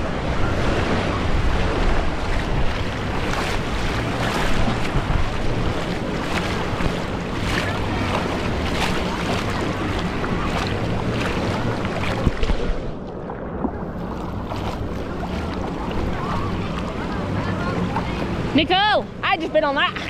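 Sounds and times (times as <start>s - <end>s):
rushing splashing water: 0.0s - 20.0s
wind buffeting microphone: 0.0s - 20.0s
brief splashes: 0.7s - 17.2s.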